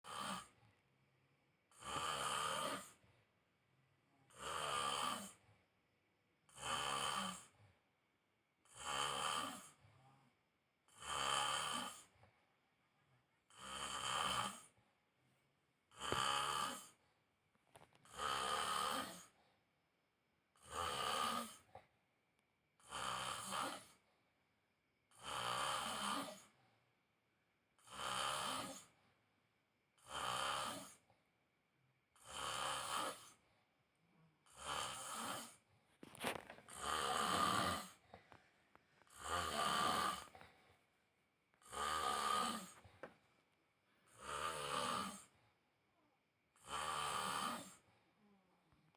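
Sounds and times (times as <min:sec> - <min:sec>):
man snoring: 0:00.0 - 0:00.5, 0:01.7 - 0:02.9, 0:04.3 - 0:05.4, 0:06.5 - 0:07.5, 0:08.7 - 0:09.8, 0:10.9 - 0:12.1, 0:13.5 - 0:14.7, 0:15.9 - 0:17.0, 0:18.0 - 0:19.4, 0:20.6 - 0:21.6, 0:22.8 - 0:23.9, 0:25.1 - 0:26.5, 0:27.8 - 0:28.9, 0:30.0 - 0:31.0, 0:32.2 - 0:33.4, 0:34.5 - 0:38.0, 0:39.1 - 0:40.4, 0:41.6 - 0:43.1, 0:44.1 - 0:45.3, 0:46.6 - 0:47.8.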